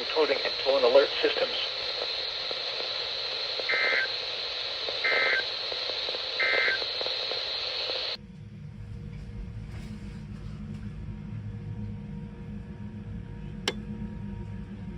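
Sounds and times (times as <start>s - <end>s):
radio static: 0.0s - 8.2s.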